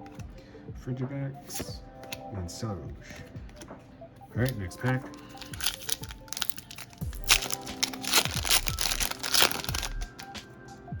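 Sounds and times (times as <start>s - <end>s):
foil wrapper tearing and crinkling: 4.4s - 10.4s.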